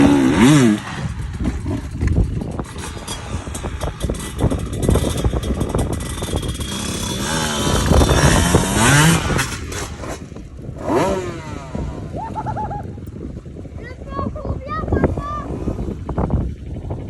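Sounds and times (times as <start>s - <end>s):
motorcycle engine revving: 0.0s - 17.0s
knocks and rattles: 0.5s - 10.4s.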